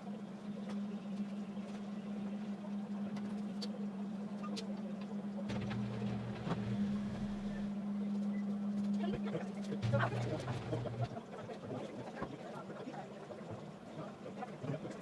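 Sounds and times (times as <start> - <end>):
second lower hum: 0.0 - 11.2
low mechanical hum: 0.0 - 15.0.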